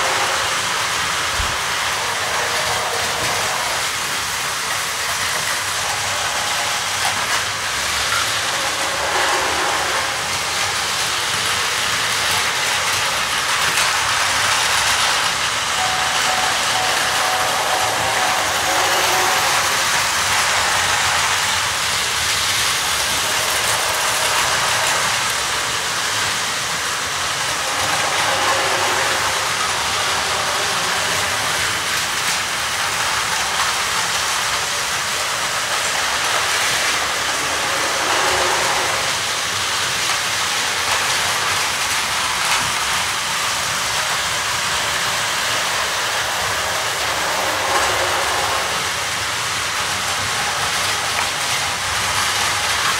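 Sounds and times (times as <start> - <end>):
toy trains whirring on plastic track: 0.0 - 52.9.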